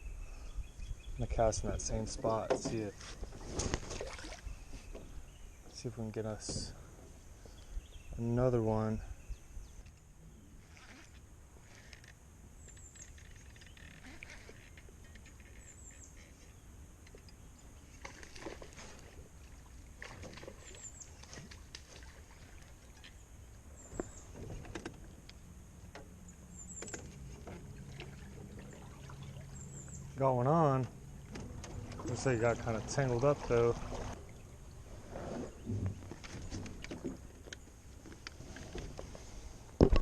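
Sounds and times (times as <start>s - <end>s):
fishing gear clicks and knocks: 10.7s - 16.3s.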